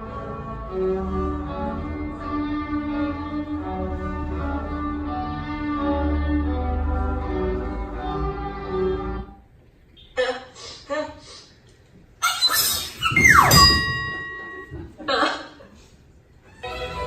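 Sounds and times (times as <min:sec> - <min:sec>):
violins and cellos playing: 0:00.0 - 0:09.3, 0:16.5 - 0:17.0.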